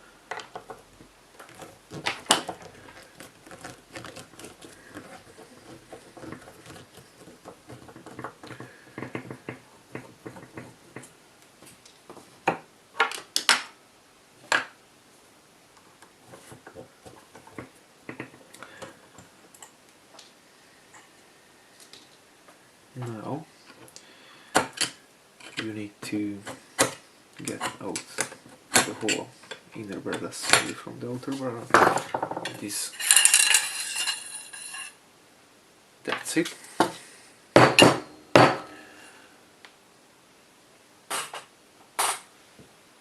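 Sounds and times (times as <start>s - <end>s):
metal parts clicking and clattering: 32.0s - 35.0s.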